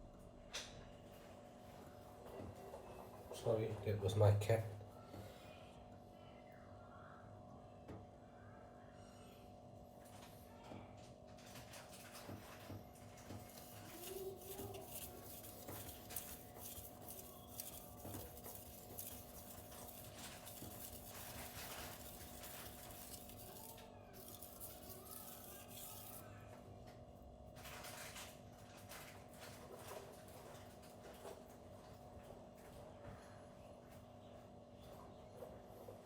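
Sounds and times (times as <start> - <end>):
knife scraping on whetstone: 13.5 - 26.2.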